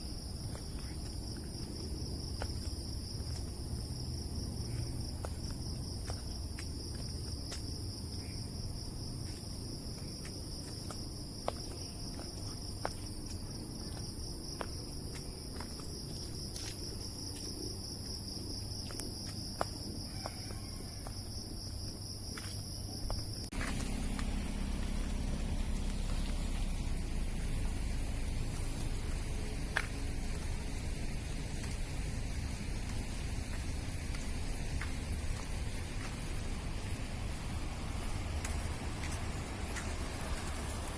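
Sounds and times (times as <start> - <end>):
insects chirring: 0.0 - 40.9
low hum: 23.5 - 40.9.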